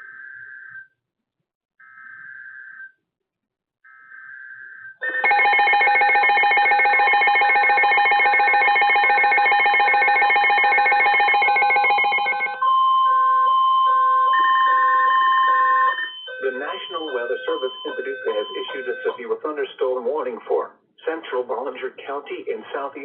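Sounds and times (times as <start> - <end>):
two-tone alarm: 0.0 - 1.0, 1.8 - 3.0, 3.9 - 19.6
steady warning tone: 5.0 - 19.8.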